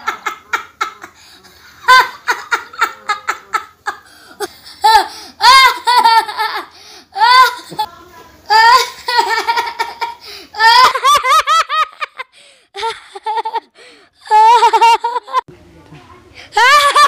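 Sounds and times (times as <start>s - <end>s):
high-pitched laughing: 12.8s - 15.4s.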